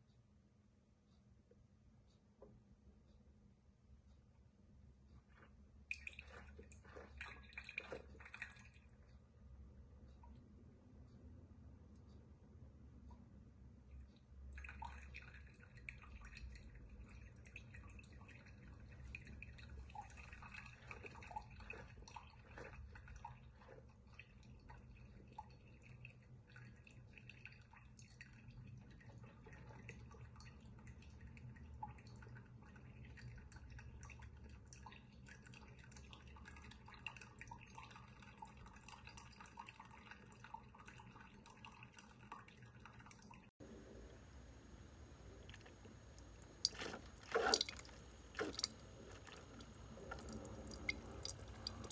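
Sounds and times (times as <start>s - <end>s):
liquid dripping and trickling: 14.1s - 43.5s, 45.0s - 51.9s
low steady hum: 42.8s - 51.9s.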